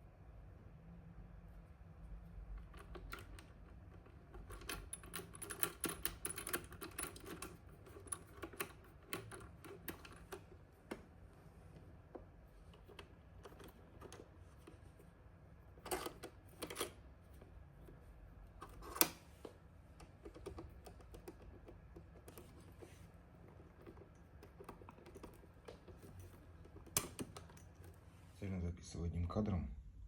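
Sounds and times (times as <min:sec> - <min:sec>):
equipment clicks and taps: 0:18.6 - 0:22.9.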